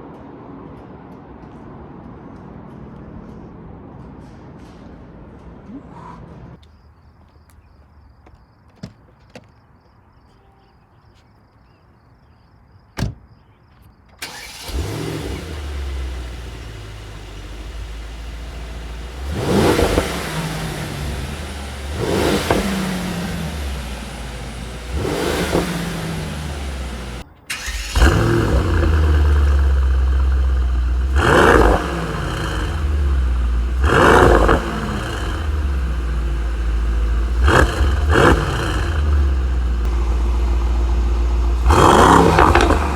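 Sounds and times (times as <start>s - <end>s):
car engine starting and revving: 14.2s - 42.9s
engine idling with low rumble: 14.7s - 27.2s, 27.8s - 42.9s.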